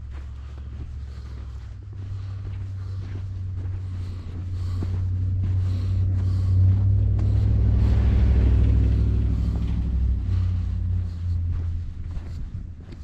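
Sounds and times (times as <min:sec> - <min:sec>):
vehicle engine rumble: 0:00.0 - 0:13.0.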